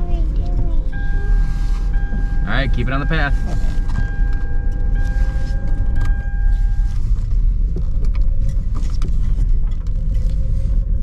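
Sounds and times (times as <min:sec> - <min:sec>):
car engine and tyres rumbling: 0:00.0 - 0:11.0
faint steady tone: 0:00.9 - 0:07.2.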